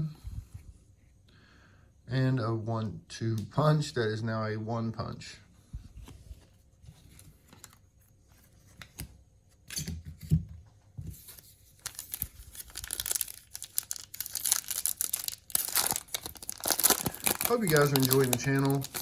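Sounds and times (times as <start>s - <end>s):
wrapper tearing and crinkling: 11.2s - 19.0s.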